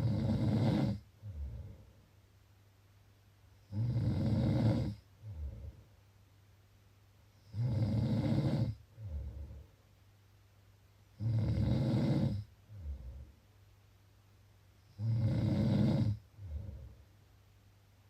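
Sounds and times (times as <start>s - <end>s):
rasping snores: 0.0s - 1.8s, 3.6s - 5.8s, 7.4s - 9.6s, 11.2s - 13.3s, 14.9s - 16.9s.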